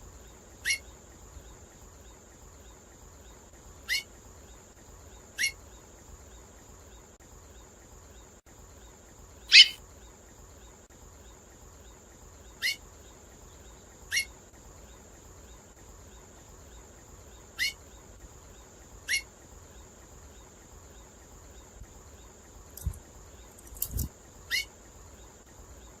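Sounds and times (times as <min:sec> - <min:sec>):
finch call notes: 0:09.5 - 0:09.8.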